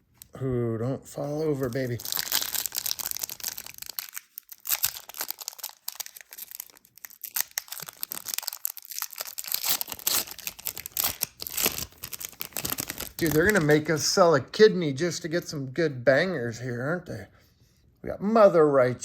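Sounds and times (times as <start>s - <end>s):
foil wrapper tearing and crumpling: 1.5s - 13.8s
cards being handled: 9.4s - 13.9s.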